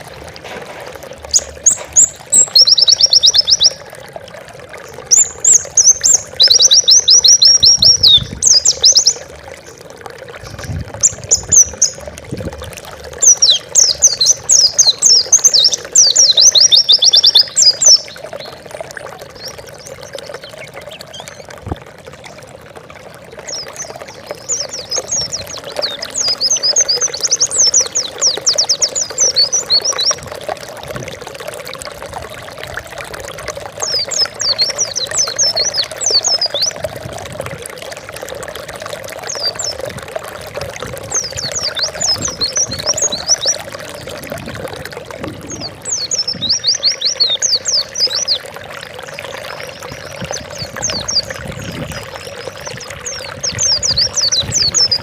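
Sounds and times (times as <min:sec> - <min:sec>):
pouring water: 0:00.0 - 0:55.0
bird twittering: 0:01.3 - 0:03.8, 0:05.1 - 0:09.3, 0:13.2 - 0:18.6, 0:45.3 - 0:48.4.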